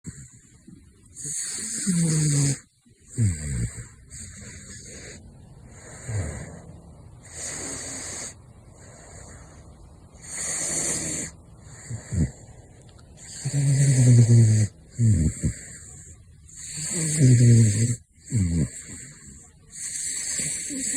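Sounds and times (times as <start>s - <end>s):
wild cat snoring: 0.1s - 20.9s.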